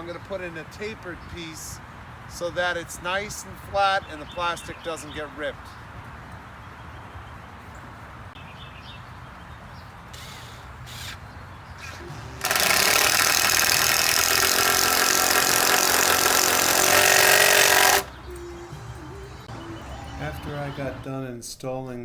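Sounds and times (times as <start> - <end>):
power tool working wood: 11.9 - 18.1.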